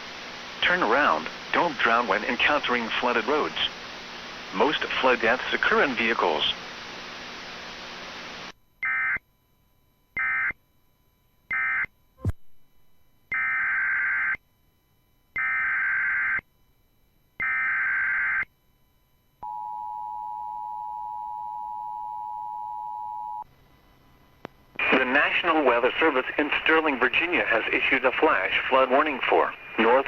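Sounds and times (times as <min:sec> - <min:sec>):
radio hiss: 0:00.2 - 0:08.5, 0:24.8 - 0:30.0.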